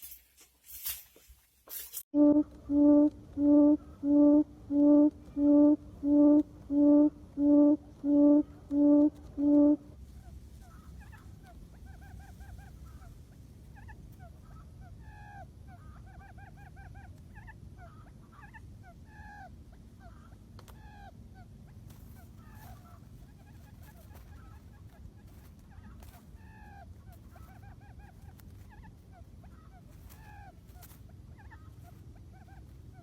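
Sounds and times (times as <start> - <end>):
birds honking calls: 2.2 - 9.9.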